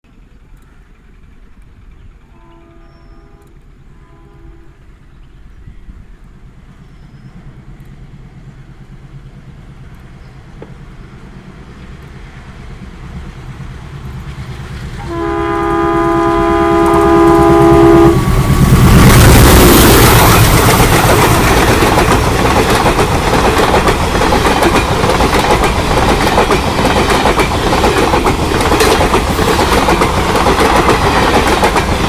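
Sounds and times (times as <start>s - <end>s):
diesel locomotive engine rumble: 0.0s - 32.0s
locomotive horn blast: 2.3s - 4.9s, 15.0s - 18.4s
train wheels rushing past: 4.6s - 32.0s.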